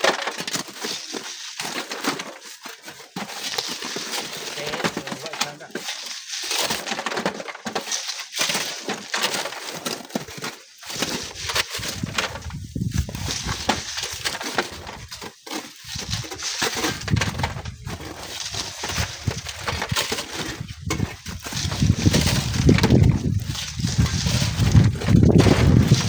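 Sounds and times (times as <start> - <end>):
wind buffeting microphone: 11.8 - 14.0, 16.9 - 26.0.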